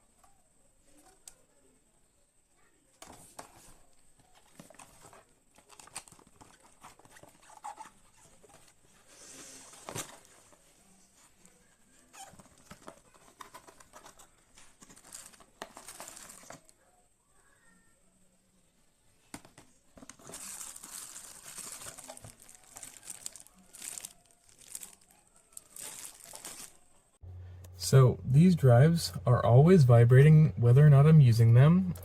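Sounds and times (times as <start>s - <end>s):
objects handled with clicks and scrapes: 3.0s - 11.5s, 12.1s - 16.7s
faint high-pitched whine: 8.8s - 32.0s.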